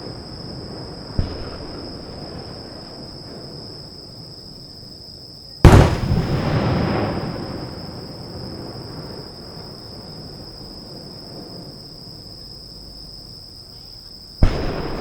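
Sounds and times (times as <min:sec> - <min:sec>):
firework rumble: 0:00.0 - 0:04.8, 0:05.6 - 0:13.3, 0:14.4 - 0:15.0
insects trilling: 0:00.0 - 0:15.0
firework shell bang: 0:05.7 - 0:07.1.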